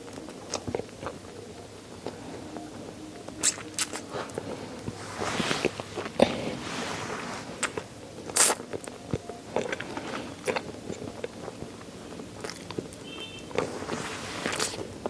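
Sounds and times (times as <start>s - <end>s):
bones crunching while chewing: 0.0s - 5.0s, 7.6s - 13.7s
wet mouth clicks: 3.4s - 4.1s.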